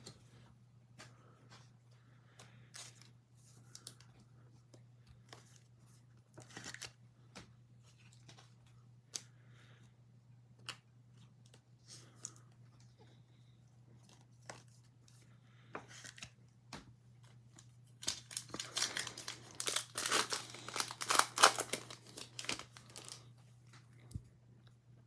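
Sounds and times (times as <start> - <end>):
card pack wrapper tearing and crinkling: 18.0 - 23.3.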